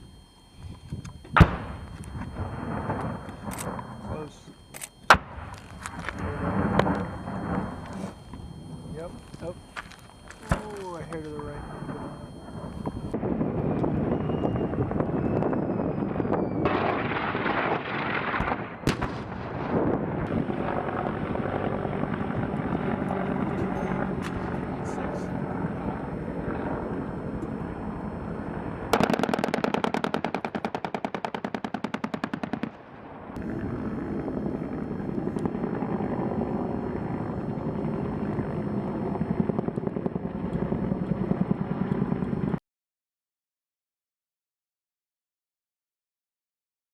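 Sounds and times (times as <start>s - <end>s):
weapon firing bang: 1.3s - 4.4s, 5.1s - 7.7s, 16.6s - 20.2s
engine or rotor rumble: 5.6s - 14.2s, 14.8s - 32.6s, 33.2s - 42.6s.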